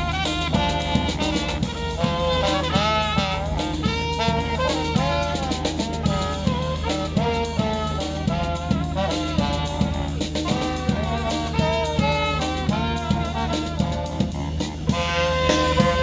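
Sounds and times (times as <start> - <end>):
brass horns playing melody: 0.0 - 16.0
drum kit steady beat: 0.0 - 16.0.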